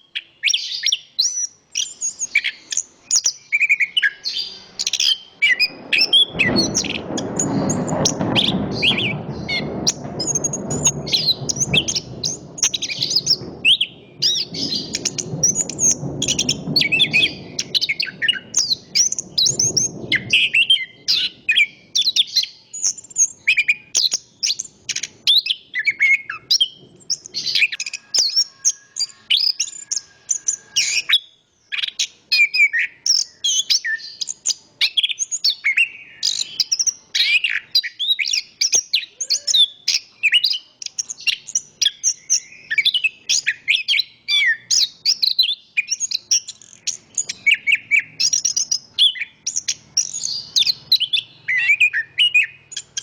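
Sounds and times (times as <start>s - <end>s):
thrush singing whistled phrases: 0.0s - 7.6s, 27.2s - 53.0s
low rush of wind: 4.2s - 31.5s.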